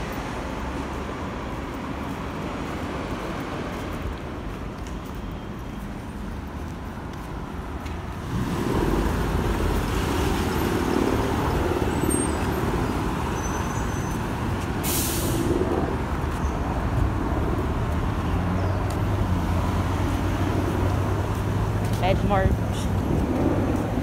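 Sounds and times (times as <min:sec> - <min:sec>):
bus engine rumbling: 0:06.8 - 0:24.0
air brake hiss: 0:14.8 - 0:15.5.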